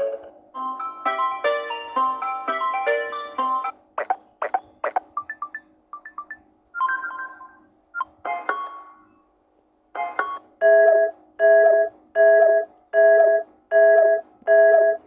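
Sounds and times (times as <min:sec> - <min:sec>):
repeating electronic tone: 0:04.0 - 0:07.6
short electronic chimes and jingles: 0:04.0 - 0:07.6.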